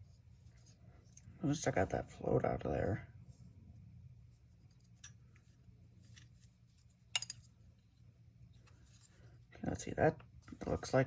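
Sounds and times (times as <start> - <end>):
low steady hum: 0.0 - 11.0
metal parts and tools clicking: 7.1 - 7.5.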